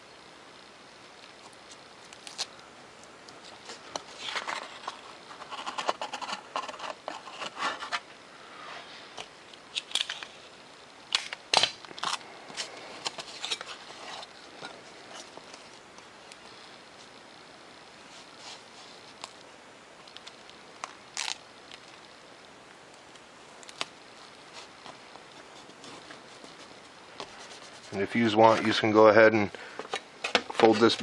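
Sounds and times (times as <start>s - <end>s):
tape being pulled and torn: 11.1s - 14.3s, 20.1s - 21.4s.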